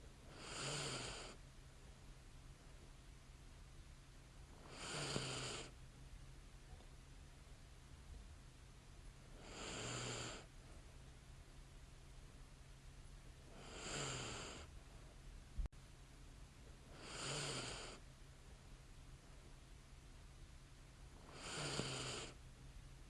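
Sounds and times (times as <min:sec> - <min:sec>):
steady low hum: 0:00.0 - 0:23.0
woman snoring lightly: 0:00.3 - 0:01.4, 0:04.6 - 0:05.7, 0:09.4 - 0:10.5, 0:13.5 - 0:14.7, 0:16.9 - 0:18.0, 0:21.2 - 0:22.4.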